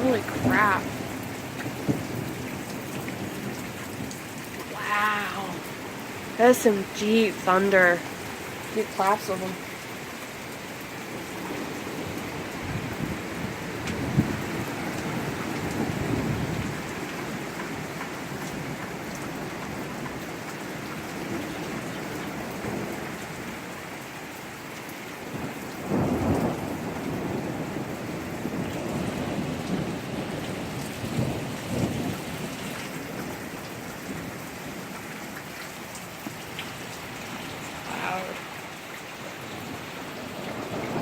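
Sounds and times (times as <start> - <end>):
thunder rumbling: 0.0 - 9.6, 11.1 - 19.9, 25.3 - 34.4, 39.5 - 41.0
heavy rain pouring: 0.0 - 41.0.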